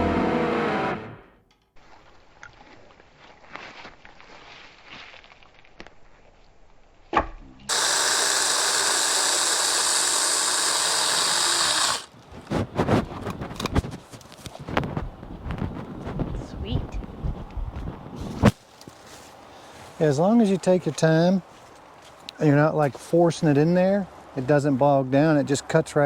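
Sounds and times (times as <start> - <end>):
battery chainsaw running: 0.0 - 1.2, 7.7 - 12.1.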